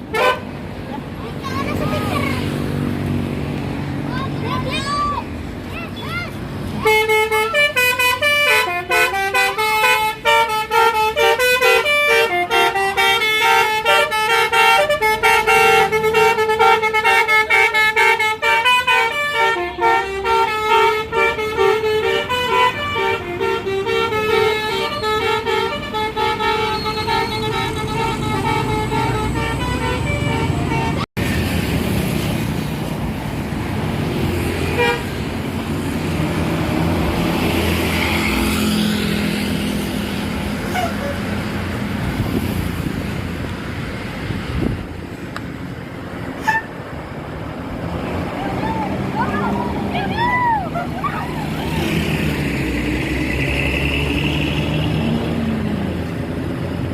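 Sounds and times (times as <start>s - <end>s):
engine and road noise: 0.0s - 56.9s
multi-tone air horn melody: 0.1s - 0.6s, 6.8s - 31.1s, 34.6s - 35.1s, 40.6s - 41.3s, 46.4s - 46.8s.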